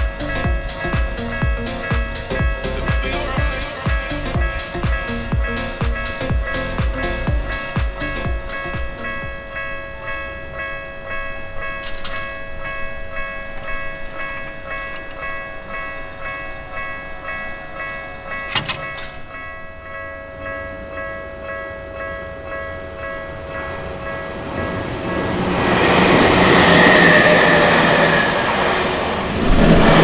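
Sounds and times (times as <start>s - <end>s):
level-crossing warning bell: 0.0s - 29.2s.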